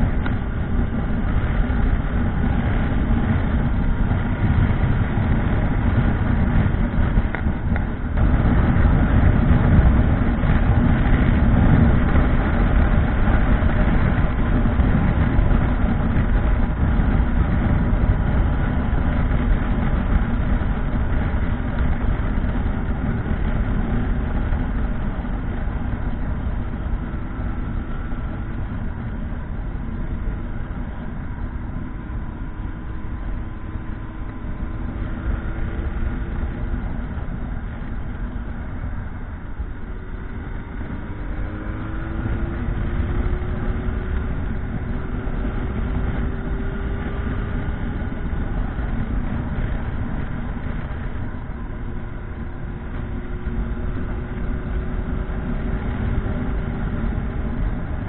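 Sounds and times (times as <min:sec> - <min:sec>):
motorcycle engine: 0:00.0 - 0:58.0
road and wind noise: 0:00.0 - 0:58.0.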